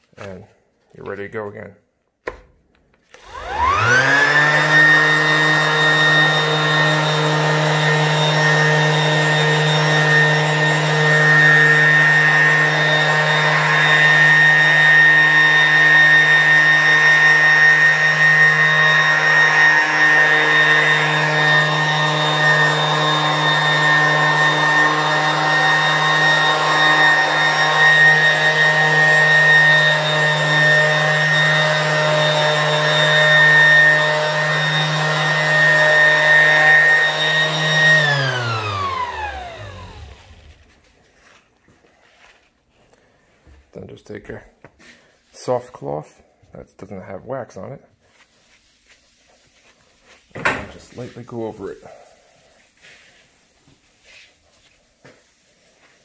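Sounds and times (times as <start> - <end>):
orbital sander whining: 3.2 - 40.8.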